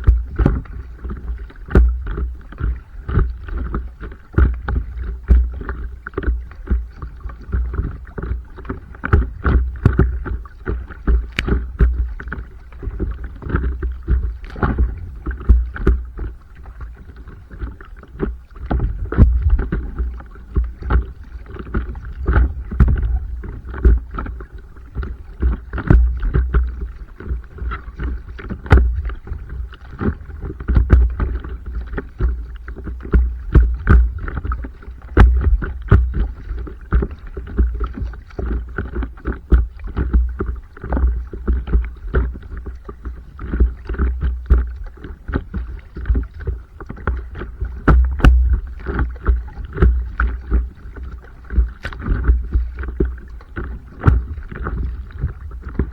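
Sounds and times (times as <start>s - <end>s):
water slapping against paddleboard: 0.0s - 55.9s
low rumble: 47.8s - 50.6s.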